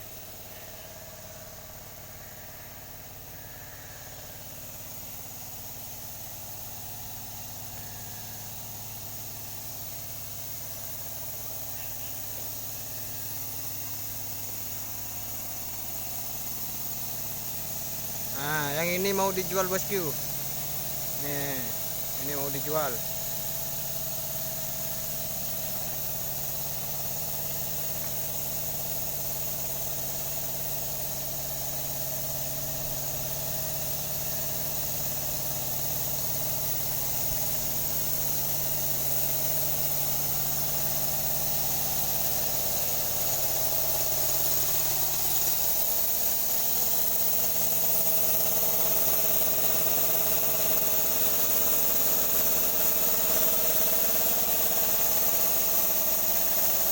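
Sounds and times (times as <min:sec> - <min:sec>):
high-pitched whine: 0:00.0 - 0:05.2, 0:17.6 - 0:23.2
engine idling: 0:00.0 - 0:56.9.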